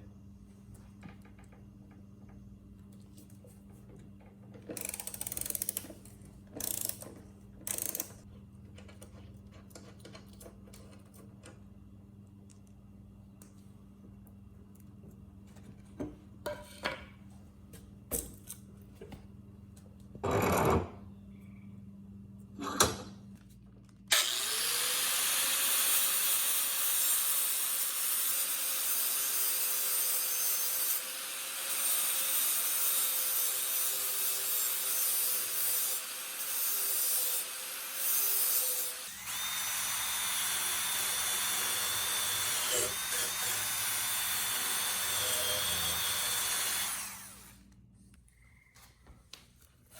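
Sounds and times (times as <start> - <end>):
power tool whining: 24.1 - 25.9, 38.6 - 47.6.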